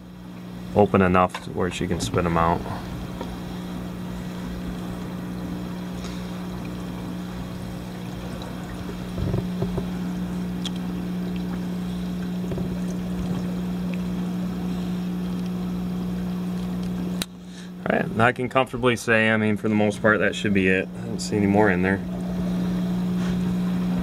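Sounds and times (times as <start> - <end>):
aquarium pump humming: 0.0 - 24.0
water trickling and splashing: 1.4 - 17.2
soft knocks: 9.1 - 10.0.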